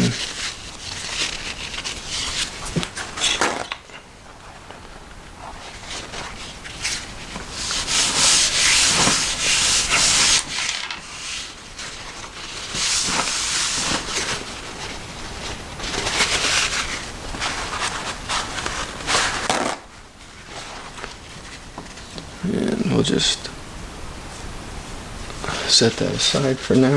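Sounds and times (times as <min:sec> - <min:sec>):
paper towel rubbing knife blade: 0:06.6 - 0:11.6.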